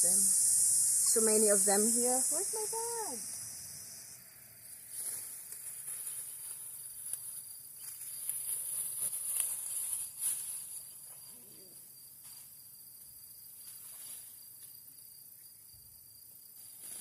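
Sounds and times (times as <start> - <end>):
insects chirring: 0.0 - 17.0
rustling of bean plants: 4.8 - 12.8, 13.4 - 14.8, 16.5 - 17.0.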